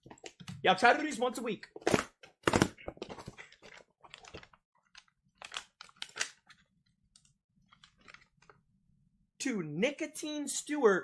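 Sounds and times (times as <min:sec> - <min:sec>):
paper packaging crinkling and tearing: 0:01.9 - 0:06.5.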